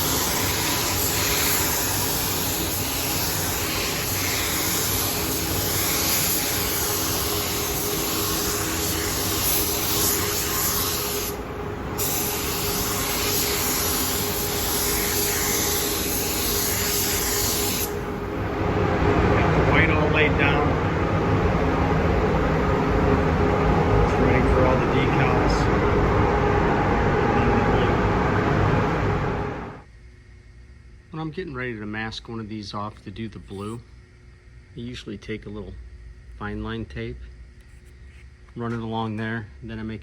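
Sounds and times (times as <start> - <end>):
paint spray gun hissing: 0.0 - 18.3.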